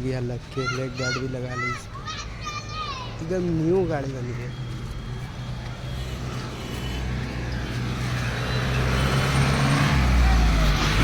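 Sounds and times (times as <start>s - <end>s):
vehicle engine humming: 3.5s - 11.0s.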